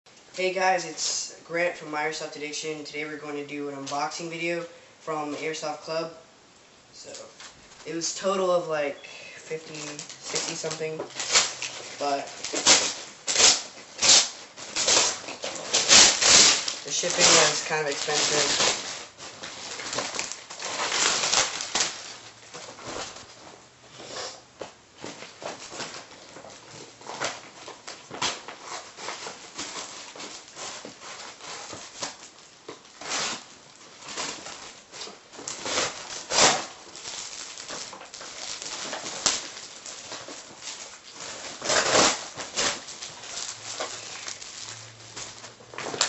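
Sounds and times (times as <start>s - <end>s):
packaging rustling and crinkling: 9.3s - 46.0s.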